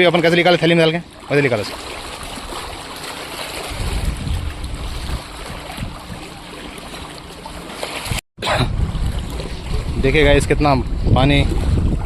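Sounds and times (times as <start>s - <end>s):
waves washing and splashing: 0.0s - 12.0s
gusty wind buffeting microphone: 3.6s - 6.3s, 8.1s - 12.0s.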